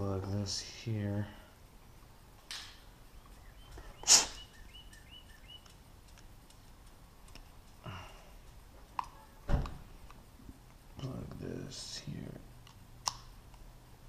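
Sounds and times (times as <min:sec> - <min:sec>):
faint high chirps: 0:03.1 - 0:05.8
sharp rustle: 0:03.8 - 0:04.5.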